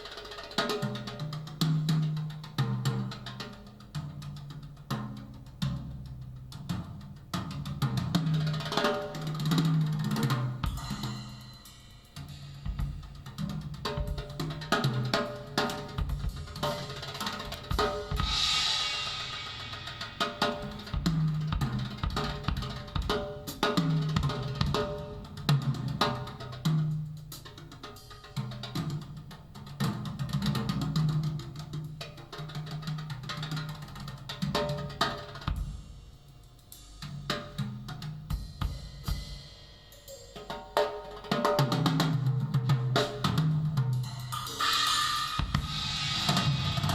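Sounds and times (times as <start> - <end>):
cymbal swell: 44.4 - 46.9.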